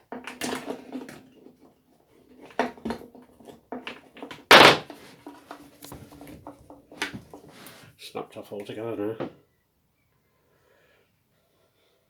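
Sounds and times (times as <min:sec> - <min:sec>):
loud knock: 0:04.5 - 0:04.9.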